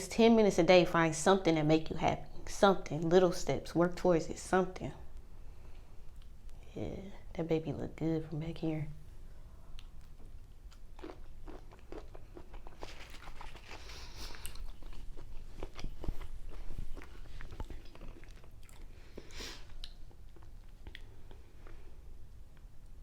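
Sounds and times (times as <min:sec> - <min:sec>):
person chewing shrimp: 0:09.6 - 0:22.6.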